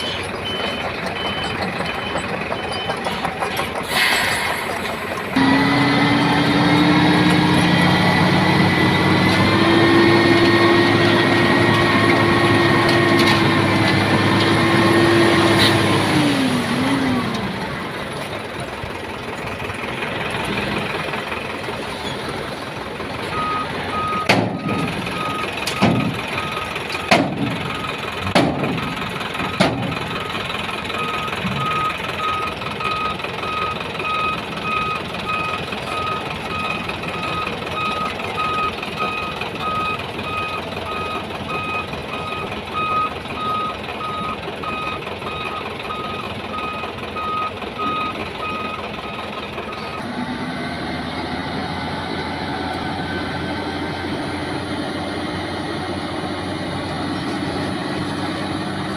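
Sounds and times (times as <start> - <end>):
reversing alarm beeps: 0.0 - 3.1, 23.3 - 28.0, 31.0 - 50.0
diesel truck engine running: 0.0 - 58.9.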